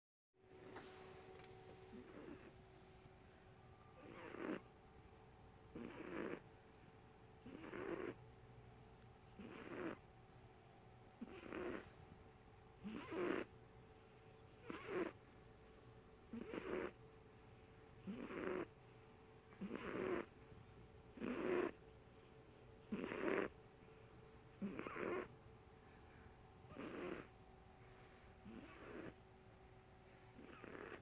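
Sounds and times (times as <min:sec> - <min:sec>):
cat snoring: 0:00.6 - 0:00.8, 0:01.9 - 0:03.0, 0:03.9 - 0:04.7, 0:05.7 - 0:06.5, 0:07.4 - 0:12.0, 0:12.8 - 0:25.3, 0:26.7 - 0:27.4, 0:28.4 - 0:29.2, 0:30.4 - 0:31.0.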